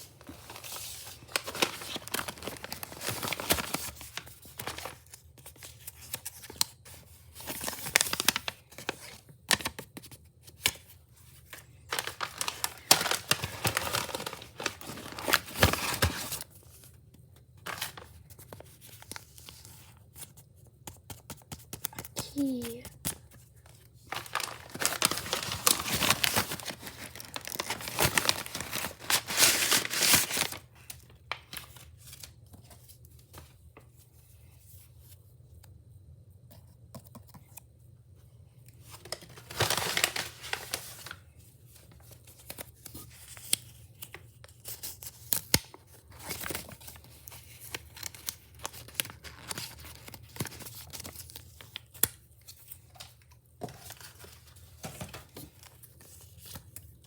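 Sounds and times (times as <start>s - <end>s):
paper crinkling: 0.0s - 33.6s, 38.8s - 57.0s
gift wrapping tearing: 0.3s - 5.1s, 7.6s - 9.1s, 11.8s - 16.4s, 24.1s - 31.6s, 39.1s - 41.2s.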